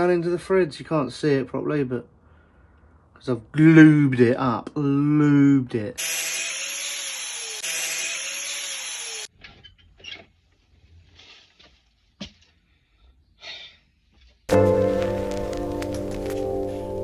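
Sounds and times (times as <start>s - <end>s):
power tool hissing: 6.0s - 9.3s
quiet scraping: 14.2s - 17.0s.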